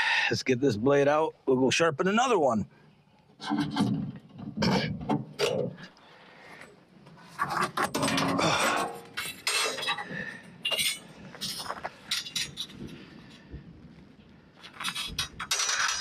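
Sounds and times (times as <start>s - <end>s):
steel blade clinking and scraping: 10.6s - 12.8s.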